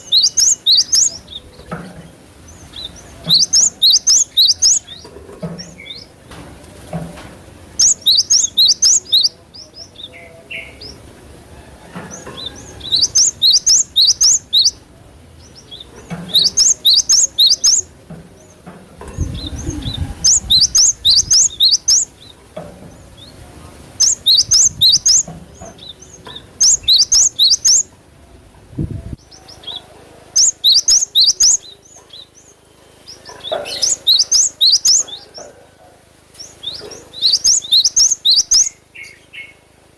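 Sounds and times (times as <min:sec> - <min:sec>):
bird rapid high chirping: 0:00.0 - 0:01.6, 0:02.4 - 0:06.1, 0:07.8 - 0:11.0, 0:12.7 - 0:14.8, 0:15.5 - 0:17.9, 0:19.2 - 0:22.4, 0:23.0 - 0:27.9, 0:30.4 - 0:35.2, 0:36.4 - 0:39.6
low rumble: 0:19.1 - 0:21.3.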